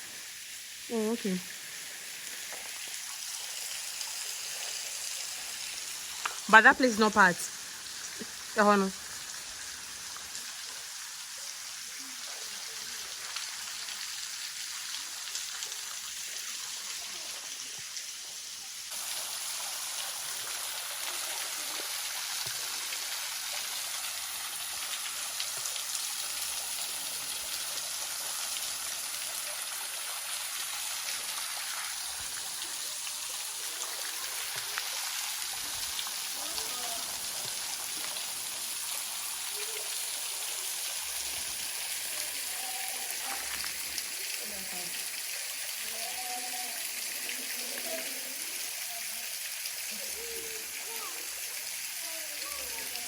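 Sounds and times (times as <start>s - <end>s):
waterfall splashing: 18.9s - 48.8s.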